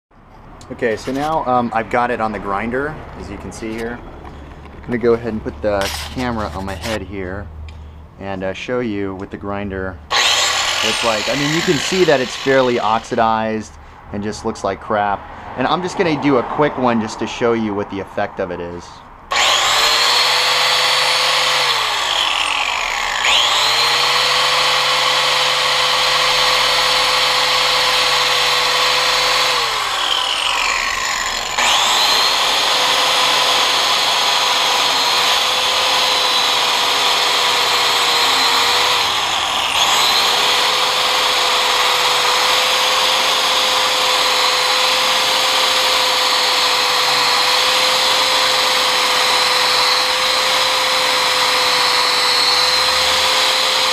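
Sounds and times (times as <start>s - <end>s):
wire wheel grinder whining: 5.8s - 7.1s, 10.1s - 13.5s, 19.3s - 53.9s.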